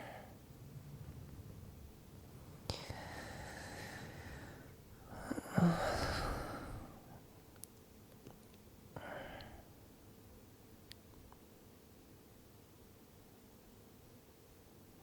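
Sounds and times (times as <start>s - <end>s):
man's sleeping breaths: 2.7s - 7.3s, 9.0s - 9.7s.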